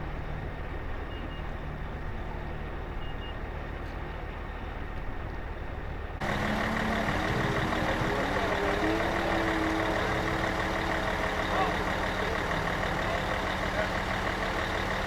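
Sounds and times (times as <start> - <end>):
motor running: 6.2 - 15.0.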